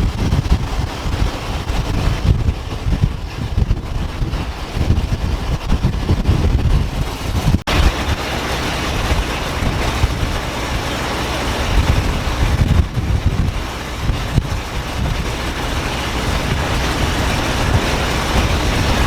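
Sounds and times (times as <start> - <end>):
hissy engine and wind noise: 0.0 - 19.0
wind buffeting microphone: 0.0 - 19.0
motor running: 7.0 - 19.0.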